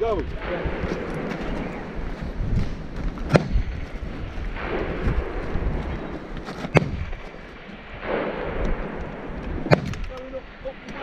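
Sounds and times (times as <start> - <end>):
rifle shot: 3.2 - 3.8, 4.4 - 10.2.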